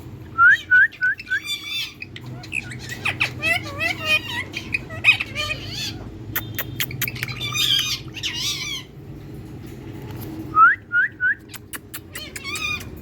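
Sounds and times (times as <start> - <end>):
parrot chattering and squawking: 0.6 - 9.2, 11.4 - 13.0.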